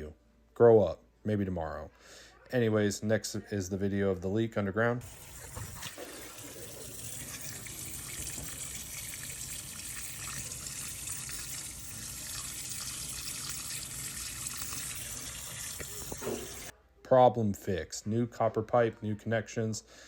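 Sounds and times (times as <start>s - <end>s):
hiss of water leaking: 5.0s - 16.7s.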